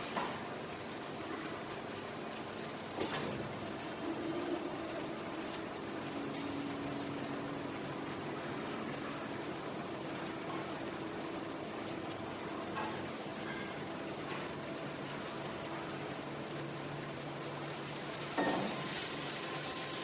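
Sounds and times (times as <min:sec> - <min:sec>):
machinery noise with high whine: 0:00.0 - 0:20.0.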